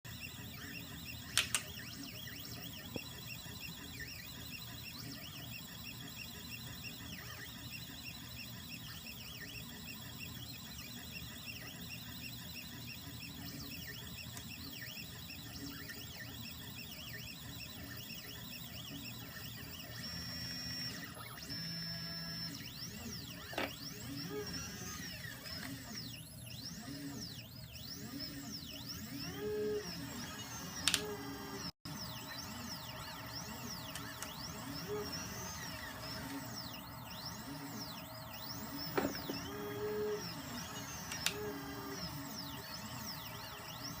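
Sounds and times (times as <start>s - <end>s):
printer stepper motors whirring: 0.0s - 44.0s
sharp clicks: 1.3s - 1.7s, 30.2s - 31.7s, 38.6s - 42.7s.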